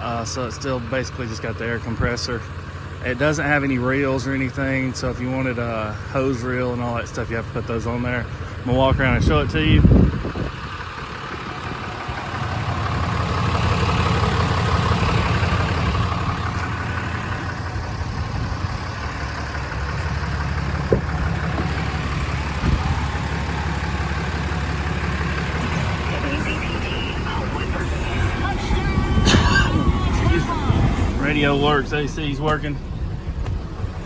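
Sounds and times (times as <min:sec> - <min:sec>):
diesel engine idling: 0:00.0 - 0:34.0
short knocks: 0:20.8 - 0:21.9.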